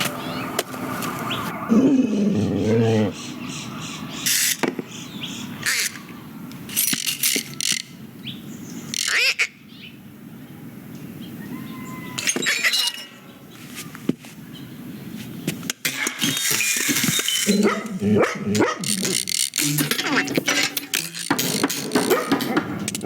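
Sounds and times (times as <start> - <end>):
clicks clinks and knocks: 15.8 - 18.0, 18.6 - 23.0
squeaky glide: 16.1 - 22.4.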